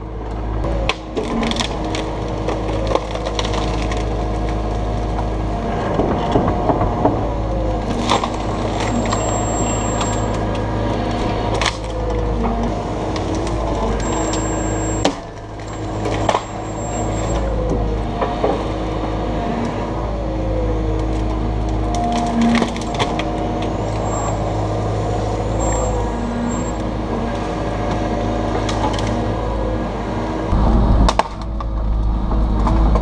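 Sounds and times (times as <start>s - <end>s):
excavator diesel engine running: 0.0s - 33.0s
wood cracking and snapping: 0.6s - 16.7s, 21.0s - 24.1s, 27.4s - 29.2s, 30.8s - 33.0s
hydraulic whine: 5.4s - 18.8s, 21.4s - 33.0s.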